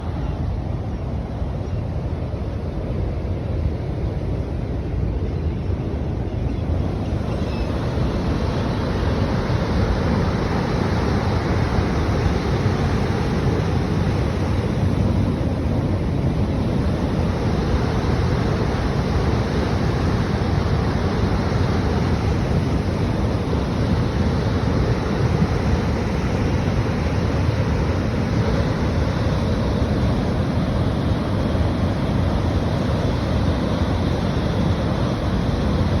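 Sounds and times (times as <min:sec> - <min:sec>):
river water rushing: 0:06.8 - 0:36.0.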